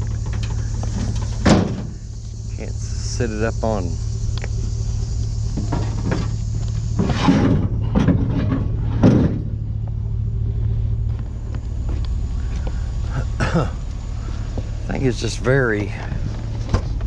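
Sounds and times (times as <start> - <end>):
vehicle engine idling: 0.0 - 17.0
knocks and scrapes: 5.5 - 9.7.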